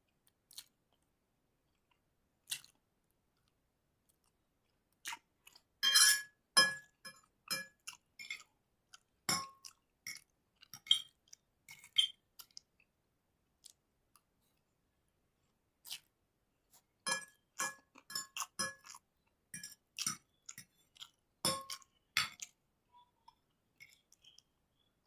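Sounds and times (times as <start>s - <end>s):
chewing and mouth sounds: 0.2s - 5.8s, 7.3s - 13.0s, 13.6s - 14.7s, 15.8s - 22.6s, 23.2s - 24.6s
utensil clinking on plate: 5.8s - 7.8s, 17.1s - 18.8s.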